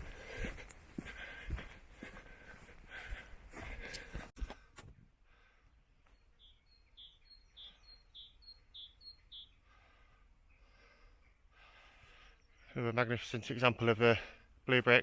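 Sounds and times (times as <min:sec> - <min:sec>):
countryside background: 0:00.0 - 0:15.0
songbird singing two-note phrases: 0:06.4 - 0:09.5.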